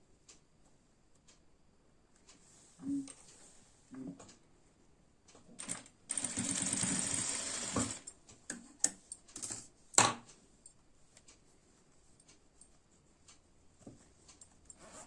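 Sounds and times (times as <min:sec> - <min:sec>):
sewing machine stitching: 0:05.6 - 0:08.1.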